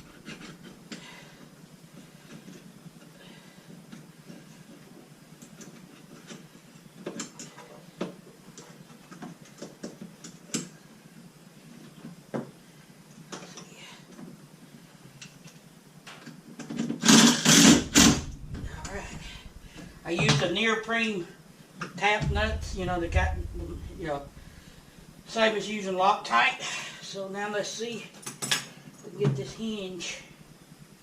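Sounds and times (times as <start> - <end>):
metal clatter: 17.6 - 20.4, 22.2 - 25.2.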